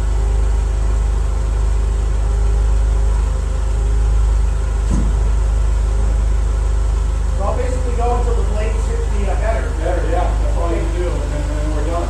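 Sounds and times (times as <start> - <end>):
engine idling: 0.0 - 12.0
short knock: 4.8 - 5.2.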